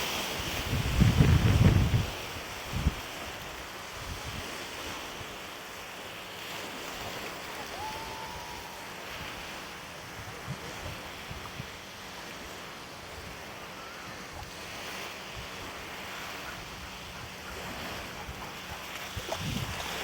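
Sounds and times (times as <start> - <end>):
wind buffeting microphone: 0.0 - 5.4, 14.1 - 20.0
small waves lapping: 0.0 - 20.0.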